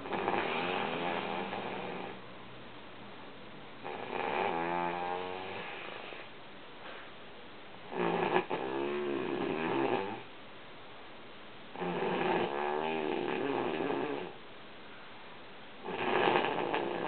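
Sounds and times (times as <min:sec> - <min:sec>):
woman snoring: 0:00.0 - 0:02.2, 0:03.8 - 0:06.1, 0:07.9 - 0:10.2, 0:11.8 - 0:14.4, 0:15.8 - 0:17.0.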